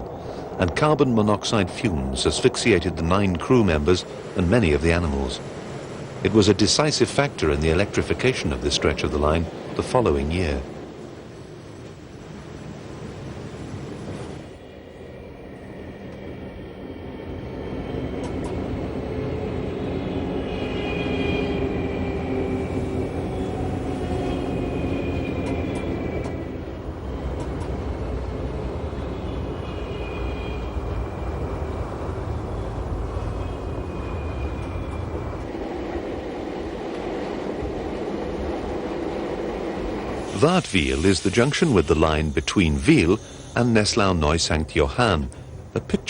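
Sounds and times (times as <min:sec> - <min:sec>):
electric train rumbling: 0:00.0 - 0:46.0
high-pitched train whine: 0:11.4 - 0:46.0.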